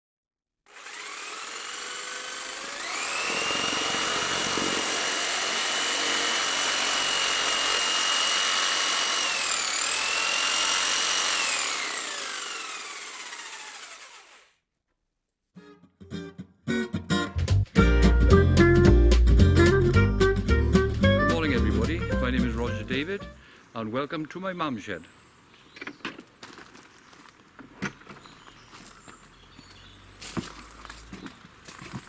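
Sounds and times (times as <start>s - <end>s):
circular saw motor whining: 0.7s - 14.5s, 20.6s - 23.4s.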